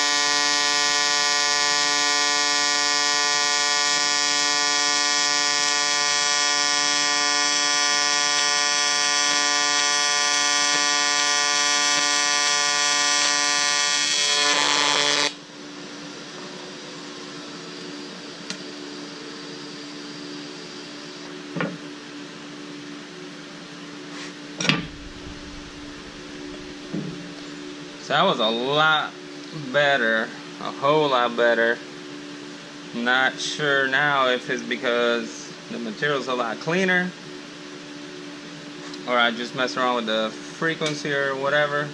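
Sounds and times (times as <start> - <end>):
welding arc buzzing: 0.0 - 15.5, 24.7 - 28.1
low hum: 24.6 - 28.6.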